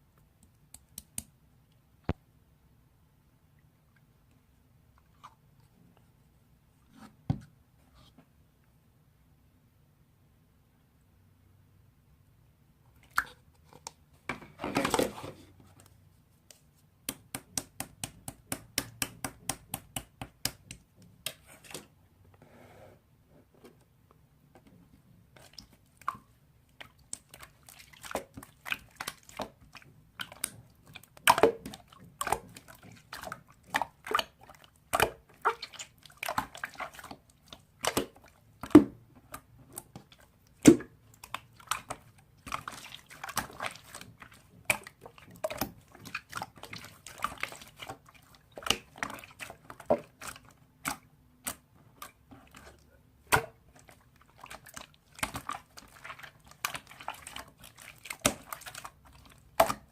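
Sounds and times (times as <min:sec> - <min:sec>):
slime squishing by hand: 0:24.7 - 0:59.9.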